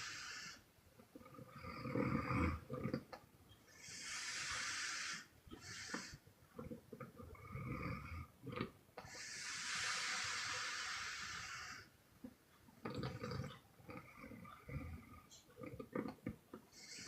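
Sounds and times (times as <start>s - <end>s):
woman snoring: 1.3s - 2.8s, 7.3s - 8.3s.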